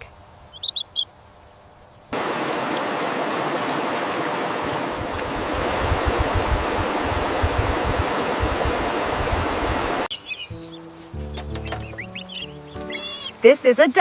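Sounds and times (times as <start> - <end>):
chick peeping: 0.0 - 1.1, 10.1 - 13.4
steady rushing noise: 2.1 - 10.1.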